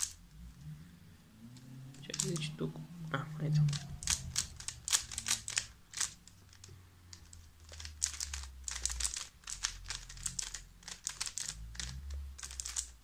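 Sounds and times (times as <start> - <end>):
puzzle cube plastic clicks: 2.0 - 2.5, 3.6 - 13.0.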